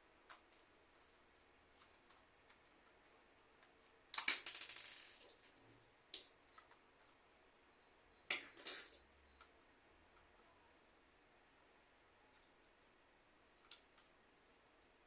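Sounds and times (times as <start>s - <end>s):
plastic parts clicking: 3.6s - 5.4s.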